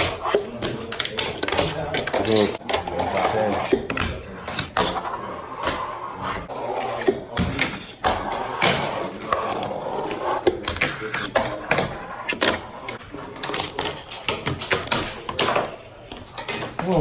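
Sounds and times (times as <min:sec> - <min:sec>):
skateboard wheels rolling: 0:00.0 - 0:17.0
skateboards clacking and thudding: 0:00.0 - 0:17.0
people's voices: 0:16.7 - 0:17.0.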